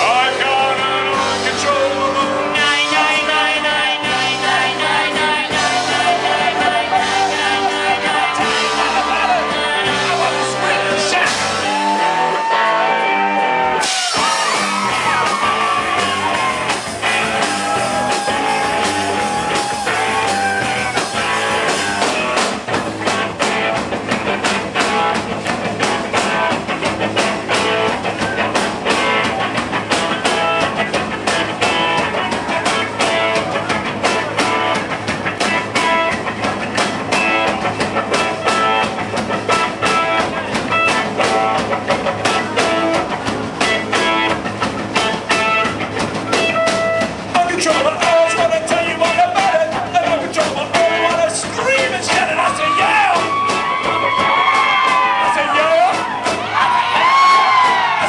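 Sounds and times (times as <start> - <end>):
singer holding long notes: 0.0 - 22.4
rock band music: 0.0 - 58.0.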